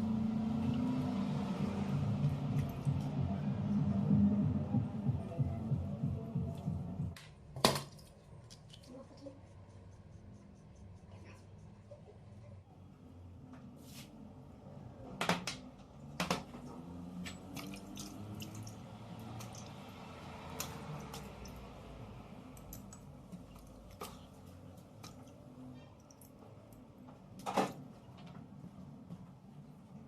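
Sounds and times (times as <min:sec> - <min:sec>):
liquid sloshing: 0:16.8 - 0:21.9.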